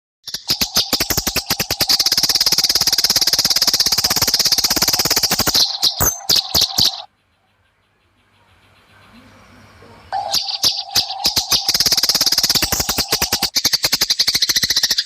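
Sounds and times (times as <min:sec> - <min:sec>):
sparrow chirping rapidly: 0:00.2 - 0:15.0.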